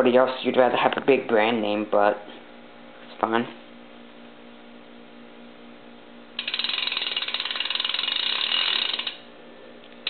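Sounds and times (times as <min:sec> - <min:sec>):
bicycle hub ratcheting clicks: 0:06.4 - 0:09.2.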